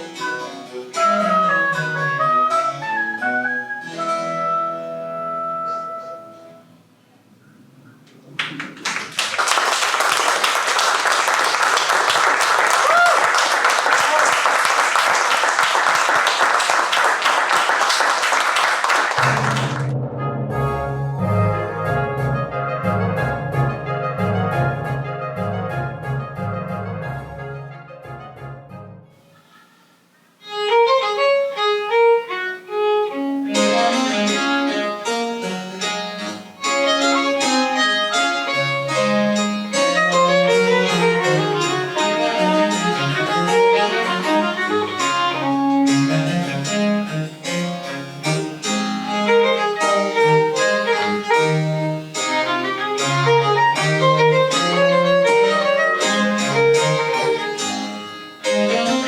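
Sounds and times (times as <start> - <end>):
baroque chamber music: 0.0 - 6.7, 30.4 - 59.0.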